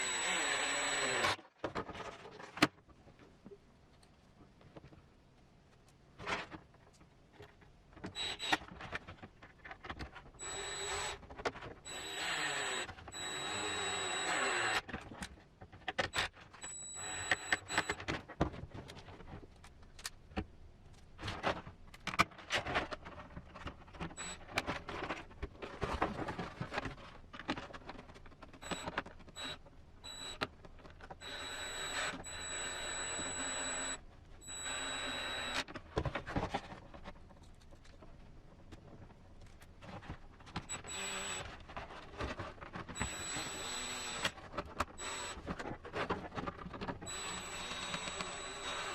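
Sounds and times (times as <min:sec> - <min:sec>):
electric screwdriver whining: 0:00.0 - 0:01.4, 0:08.2 - 0:08.6, 0:10.4 - 0:11.2, 0:11.9 - 0:14.8, 0:16.6 - 0:18.0, 0:24.2 - 0:24.4, 0:28.6 - 0:30.4, 0:31.2 - 0:35.6, 0:40.7 - 0:41.6, 0:43.0 - 0:45.5, 0:47.0 - 0:48.9.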